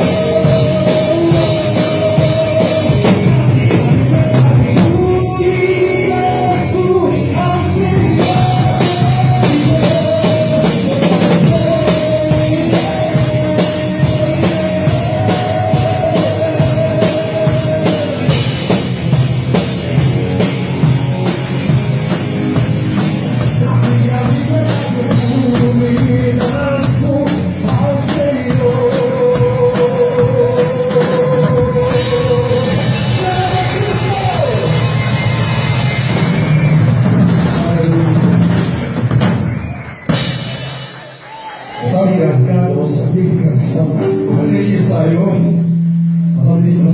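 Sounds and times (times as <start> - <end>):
person singing long notes: 0.0 - 18.6
worship band playing: 0.0 - 46.9.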